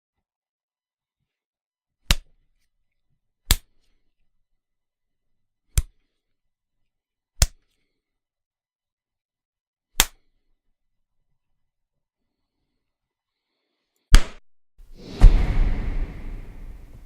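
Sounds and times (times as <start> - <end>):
punch sound effects: 15.0 - 17.0.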